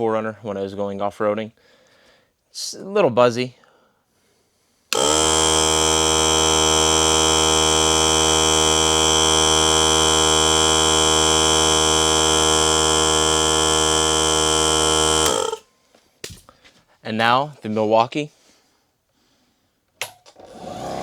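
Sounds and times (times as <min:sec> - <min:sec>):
air compressor running: 0:04.9 - 0:15.6.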